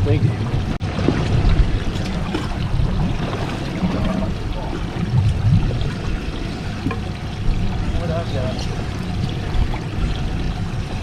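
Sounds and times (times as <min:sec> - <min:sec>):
low uneven rumble: 0:00.0 - 0:11.0
water sloshing around boat: 0:00.0 - 0:11.0.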